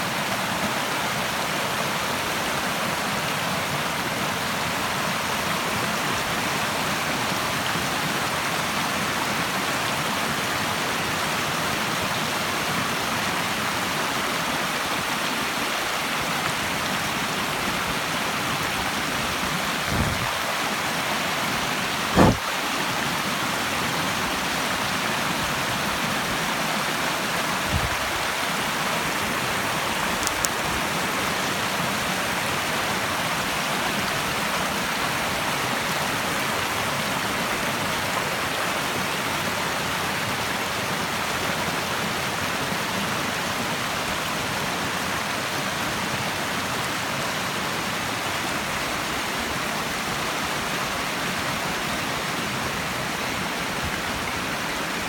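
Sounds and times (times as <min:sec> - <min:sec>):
water rushing over rocks: 0:00.0 - 0:55.0
soft low thump: 0:19.9 - 0:20.4, 0:22.2 - 0:22.4.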